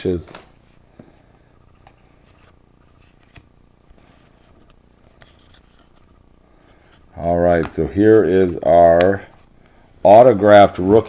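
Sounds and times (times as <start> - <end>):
low room noise: 0.0 - 11.0
trading cards clicking and rubbing: 1.6 - 9.8.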